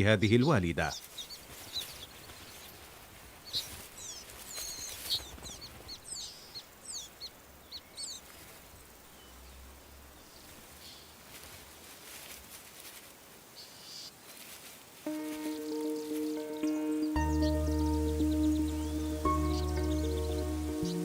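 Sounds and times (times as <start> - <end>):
faint background hiss: 0.0 - 21.0
small songbird chirping: 0.3 - 21.0.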